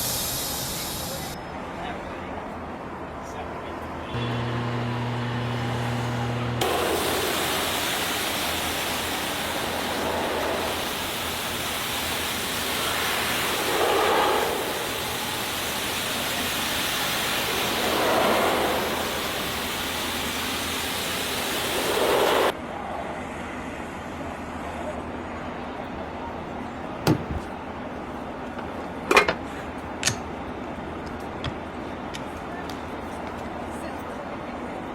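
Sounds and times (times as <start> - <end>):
water spraying hiss: 0.0 - 1.4, 6.6 - 22.5.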